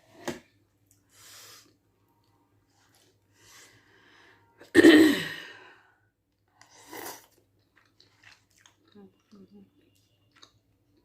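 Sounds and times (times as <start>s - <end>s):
quiet breathing: 2.6s - 4.6s.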